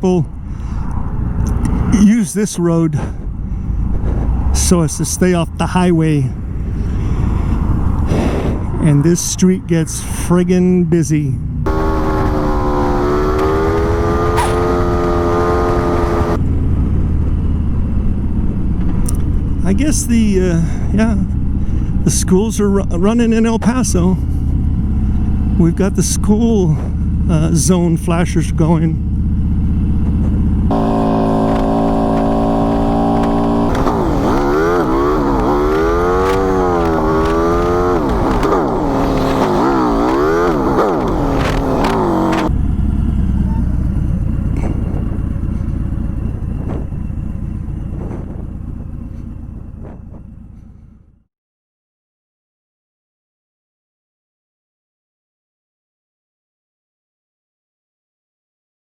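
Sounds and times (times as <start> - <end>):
wind rumble: 0.3 - 2.0, 3.0 - 10.6, 29.0 - 51.1
motorcycle engine cruising: 11.4 - 51.2.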